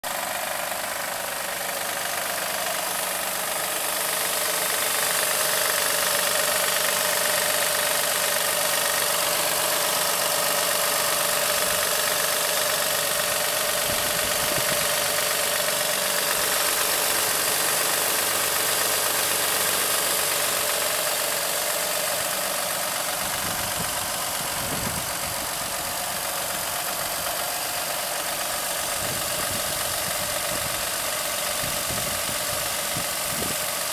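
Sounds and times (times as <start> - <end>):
car engine running: 0.0 - 33.9.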